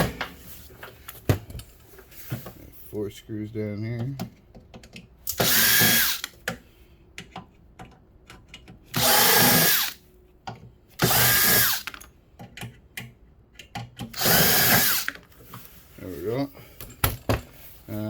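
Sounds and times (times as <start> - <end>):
power drill-driver whirring: 5.3 - 6.4, 9.0 - 10.0, 11.0 - 12.1, 14.1 - 15.2.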